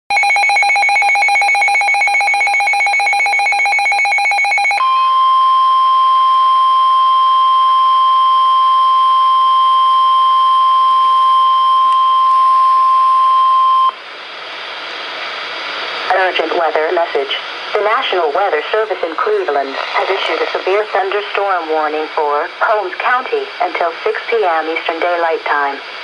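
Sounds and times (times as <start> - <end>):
rapidly pulsing electronic alert: 0.1 - 4.8
steady warning alarm tone: 0.1 - 14.0.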